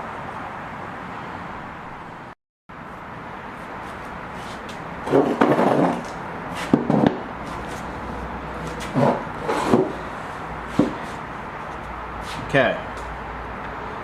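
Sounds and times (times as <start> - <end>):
rubbing and scraping: 3.8 - 12.5.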